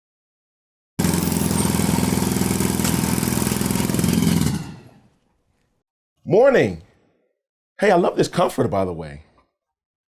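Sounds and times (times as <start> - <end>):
engine running with fast pulse: 1.0 - 5.0.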